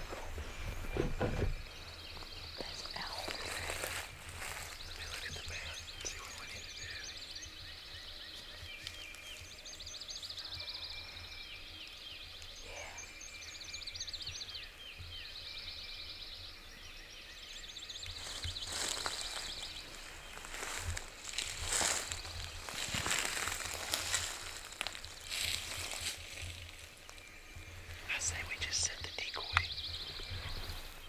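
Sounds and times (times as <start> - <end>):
songbirds trilling and chirping: 0.0 - 31.0
rustle in dry leaves: 1.8 - 7.2, 18.1 - 28.5.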